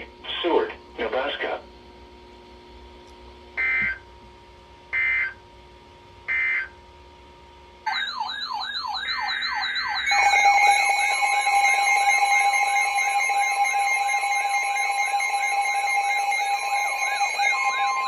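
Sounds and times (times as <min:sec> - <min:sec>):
steady alert tone: 0:07.9 - 0:18.0
warbling electronic alert tone: 0:07.9 - 0:18.0.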